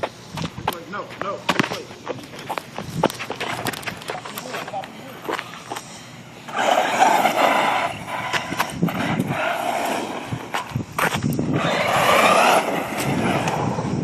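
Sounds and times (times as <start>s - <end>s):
electric rc car motor and tyres rushing: 6.4s - 14.0s.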